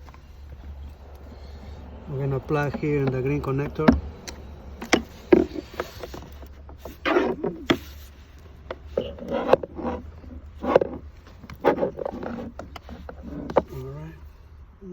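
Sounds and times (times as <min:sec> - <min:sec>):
cable scraping and rubbing: 0:00.0 - 0:14.5
low hum: 0:00.0 - 0:14.9.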